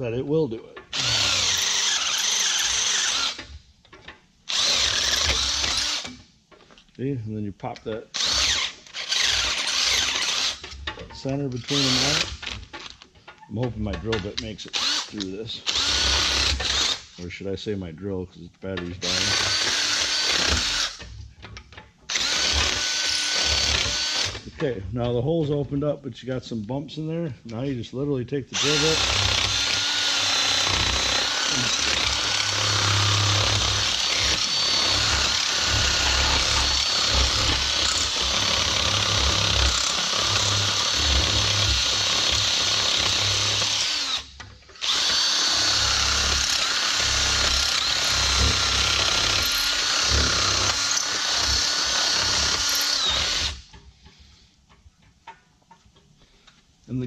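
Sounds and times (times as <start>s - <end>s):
cordless drill whining: 0.9s - 3.5s, 4.5s - 6.2s, 8.2s - 10.9s, 11.6s - 12.6s, 14.7s - 17.2s, 19.0s - 21.2s, 22.1s - 24.4s, 28.6s - 53.8s.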